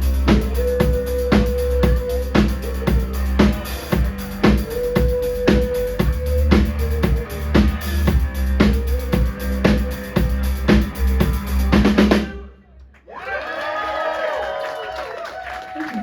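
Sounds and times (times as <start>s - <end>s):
rock drum kit beat: 0.0s - 12.3s.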